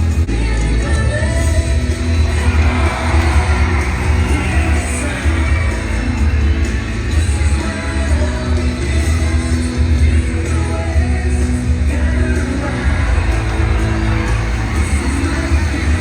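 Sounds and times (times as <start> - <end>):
pop music with singing: 0.0 - 16.0
heavy bass beat: 12.4 - 16.0.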